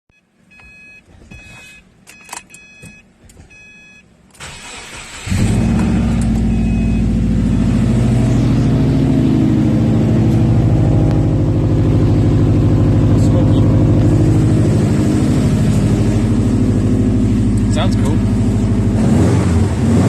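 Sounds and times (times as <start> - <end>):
engine starter cranking: 4.3 - 6.6
car engine idling loudly: 5.4 - 19.2
dashboard chime pulses: 6.4 - 15.2.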